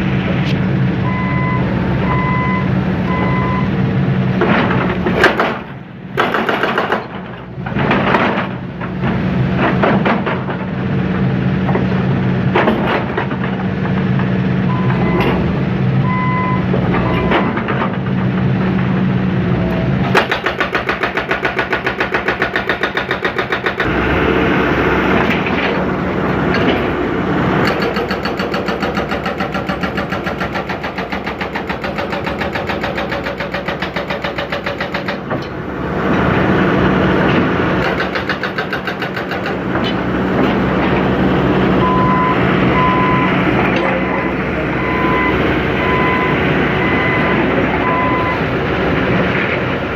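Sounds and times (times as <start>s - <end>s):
excavator diesel engine: 0.0s - 49.9s
short electronic beeps: 1.1s - 3.7s, 44.0s - 48.4s.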